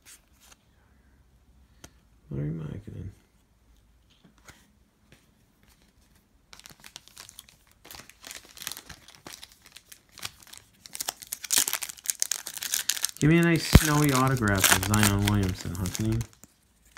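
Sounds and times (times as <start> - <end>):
foil wrapper crinkling and tearing: 6.6 - 16.5.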